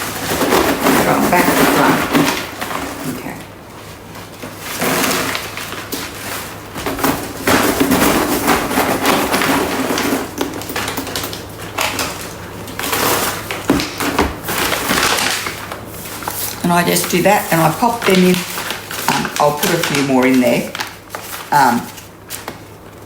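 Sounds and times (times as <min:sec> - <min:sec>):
coated peanuts clattering: 0:07.8 - 0:22.5.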